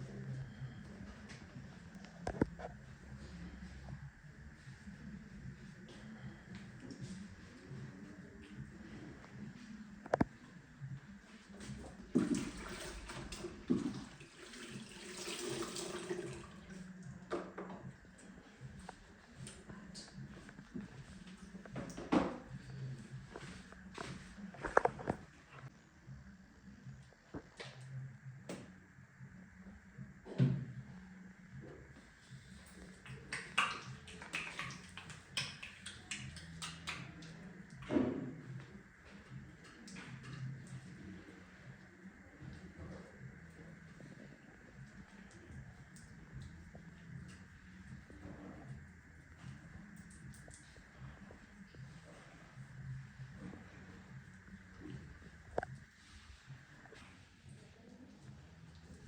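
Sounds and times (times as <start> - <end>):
low steady hum: 0.0 - 59.0
water running into a sink: 12.2 - 16.6
hands tapping and slapping skin: 33.0 - 37.1.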